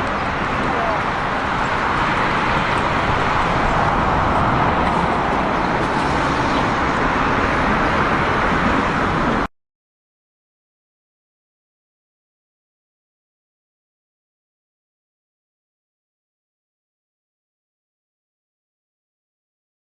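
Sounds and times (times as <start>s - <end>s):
jet engines roaring: 0.0s - 9.5s.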